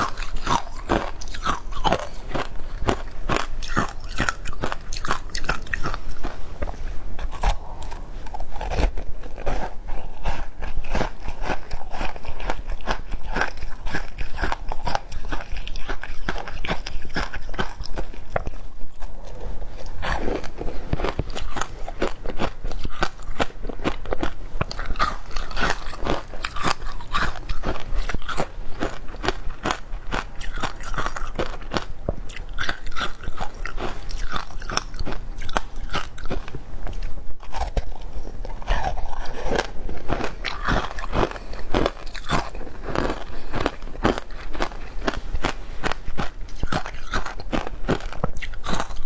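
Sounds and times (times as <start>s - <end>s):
ice crunching while chewed: 0.0s - 49.0s.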